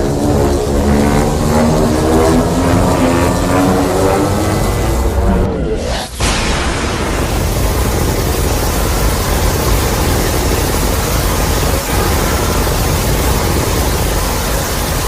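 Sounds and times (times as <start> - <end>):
monster roar with low rumble: 0.0 - 9.2.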